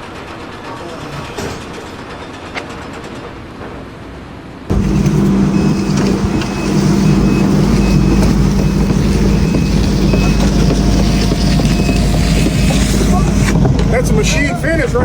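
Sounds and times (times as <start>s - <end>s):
heavy vehicle engine running: 4.7s - 15.0s
reversing alarm beeping: 4.7s - 15.0s.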